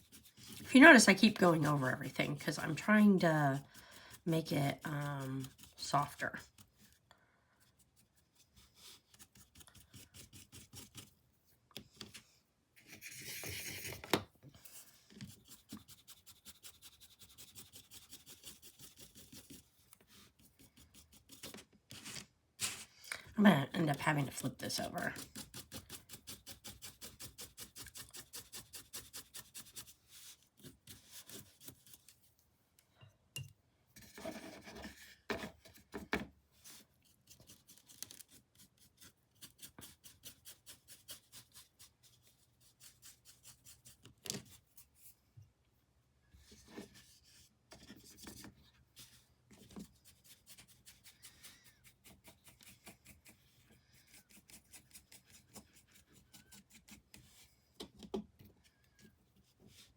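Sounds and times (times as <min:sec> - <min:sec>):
paintbrush scrubbing on canvas: 0:00.0 - 0:07.0, 0:14.6 - 0:23.1, 0:23.8 - 0:32.3, 0:36.6 - 0:45.1, 0:48.9 - 0:57.5.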